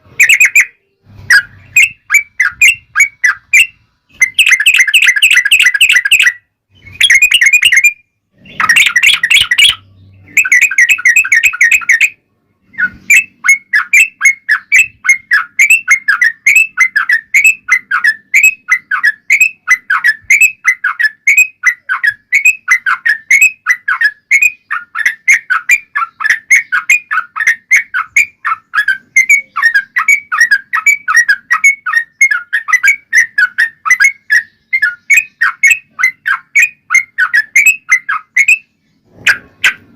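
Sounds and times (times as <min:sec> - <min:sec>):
bird chattering song: 0:00.0 - 0:39.9.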